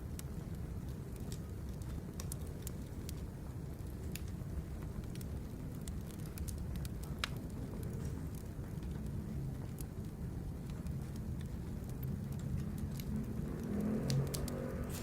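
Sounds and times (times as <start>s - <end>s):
firewood crackling and popping: 0.0s - 15.0s
fire low rush: 11.6s - 15.0s.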